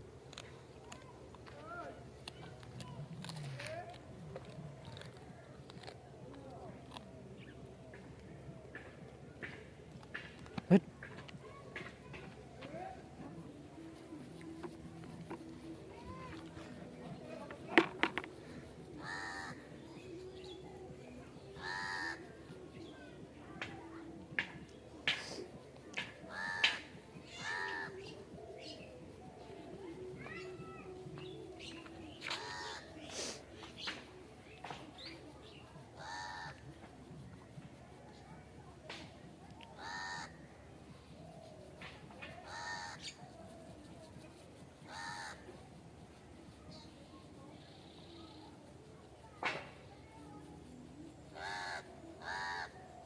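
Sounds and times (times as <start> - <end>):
harsh animal calls: 36.0 - 36.6, 39.8 - 40.4, 51.4 - 52.8.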